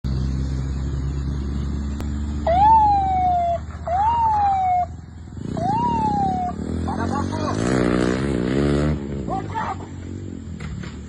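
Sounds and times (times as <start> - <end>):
vehicle engine hum: 0.0 - 11.0
police siren wailing: 2.4 - 6.8.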